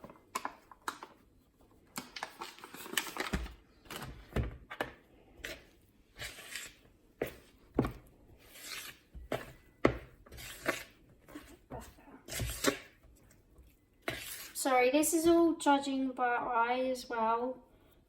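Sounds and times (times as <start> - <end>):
spoon stirring dough: 4.6 - 14.7.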